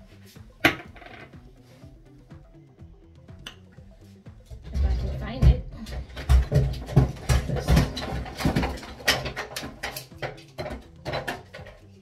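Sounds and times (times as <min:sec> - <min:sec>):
hard objects clattering: 0:00.6 - 0:01.4, 0:04.4 - 0:12.0.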